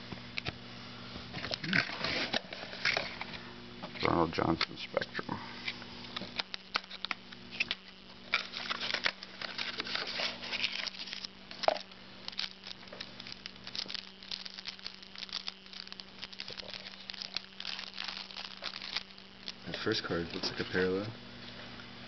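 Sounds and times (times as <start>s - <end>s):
cards and wrappers rustling: 6.2s - 21.0s.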